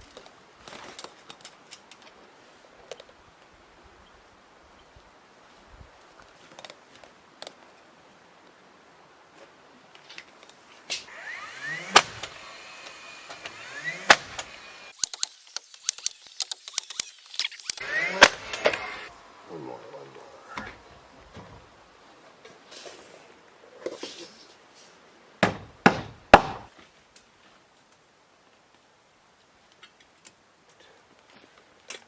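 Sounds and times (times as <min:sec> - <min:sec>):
sharp knocks: 0:25.4 - 0:26.7.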